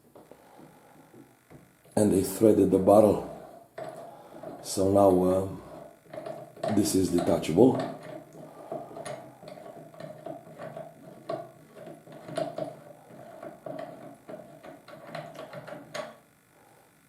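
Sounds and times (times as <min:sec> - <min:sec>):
metallic clicking and scraping: 0:03.4 - 0:16.3.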